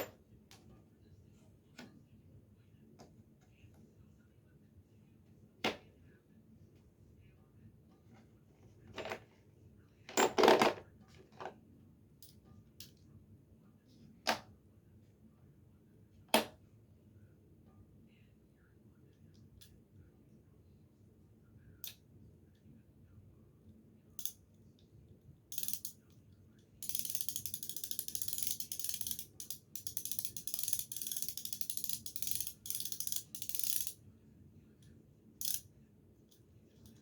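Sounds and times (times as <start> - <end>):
ratchet pawl clicking: 25.5 - 25.9, 26.8 - 34.0, 35.4 - 35.6.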